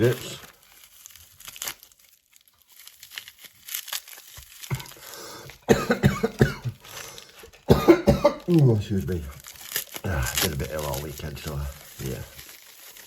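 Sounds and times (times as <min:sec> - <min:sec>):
man coughing: 0:05.6 - 0:06.8, 0:07.7 - 0:08.6.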